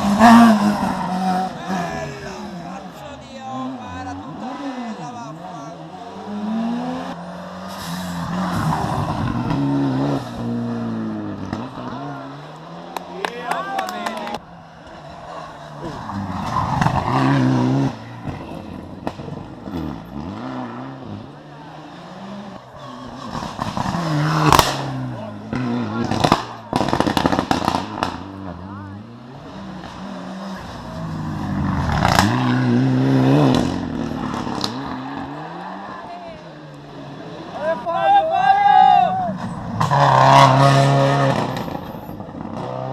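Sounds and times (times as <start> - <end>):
rally car passing at speed: 0.0 - 42.9
sharp crack: 23.2 - 28.3.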